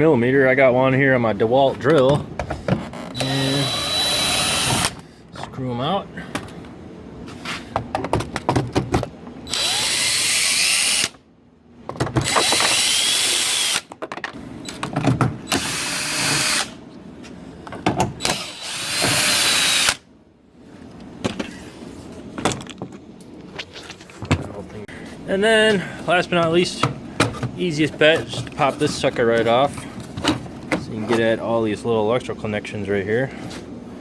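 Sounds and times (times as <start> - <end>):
cordless drill whining: 3.0 - 5.0, 9.5 - 11.2, 12.2 - 13.9, 15.5 - 16.8, 18.2 - 20.0
handling clicks and knocks: 13.9 - 15.4, 22.4 - 24.7.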